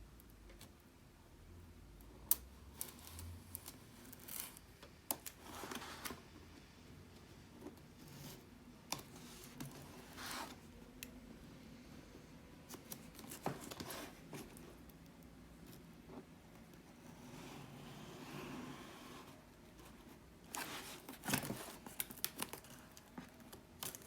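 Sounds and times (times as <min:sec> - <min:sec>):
rustling box and wrapping: 0:09.1 - 0:10.7, 0:12.7 - 0:14.8, 0:18.5 - 0:24.0.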